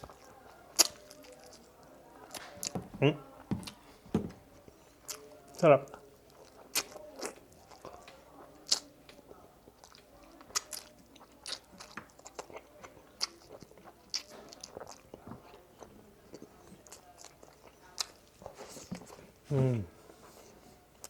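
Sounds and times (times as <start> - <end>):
person chewing: 0.0 - 1.6, 5.0 - 8.9, 9.6 - 20.4.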